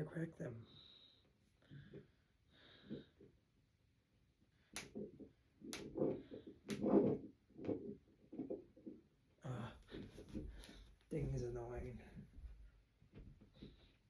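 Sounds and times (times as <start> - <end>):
knuckles cracking: 4.6 - 9.0.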